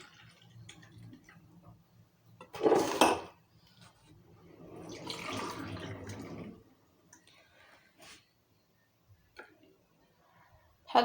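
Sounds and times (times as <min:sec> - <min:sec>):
kitchenware clattering: 0:02.4 - 0:03.4
liquid sounds: 0:04.1 - 0:07.4.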